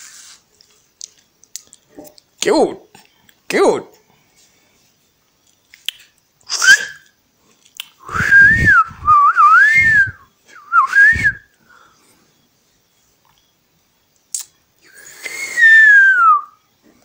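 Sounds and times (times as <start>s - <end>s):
person whistling: 6.5s - 7.1s, 8.0s - 11.5s, 15.0s - 16.6s.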